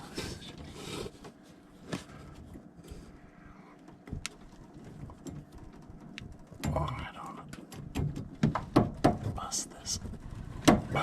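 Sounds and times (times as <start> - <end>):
sharp clicks and knocks: 3.8 - 11.0.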